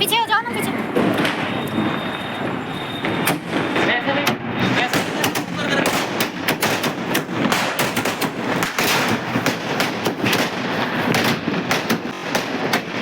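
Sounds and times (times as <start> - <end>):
fireworks cracking bangs: 0.0 - 13.0.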